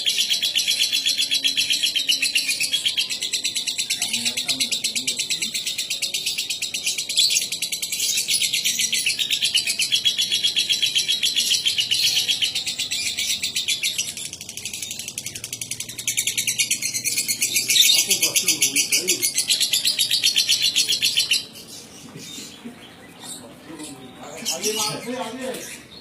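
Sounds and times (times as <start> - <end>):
bird chattering trill: 8.8 - 21.7.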